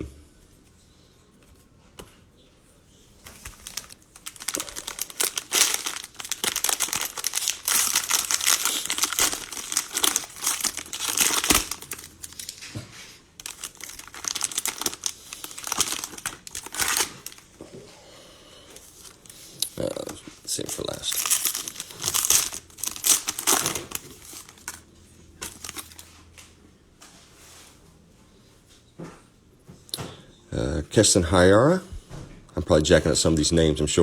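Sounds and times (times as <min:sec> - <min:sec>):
plastic wrapper crinkling and tearing: 0:03.2 - 0:17.7, 0:18.7 - 0:24.8, 0:25.4 - 0:26.1.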